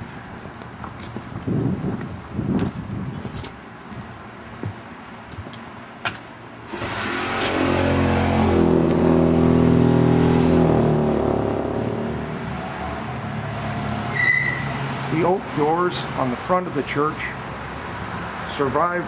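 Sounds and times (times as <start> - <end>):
vehicle engine passing by: 6.7 - 15.3.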